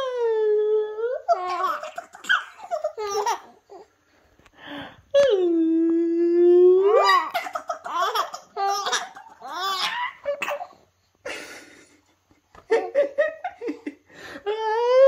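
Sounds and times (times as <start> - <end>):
baby giggling: 1.3 - 3.6, 6.8 - 10.8.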